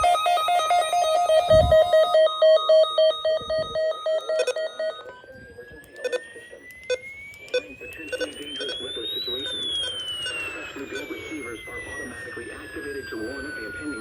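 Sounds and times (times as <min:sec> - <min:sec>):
electronic alarm beeping: 0:00.0 - 0:14.0
tone rising in pitch: 0:00.0 - 0:14.0
sharp clicks: 0:05.8 - 0:08.8.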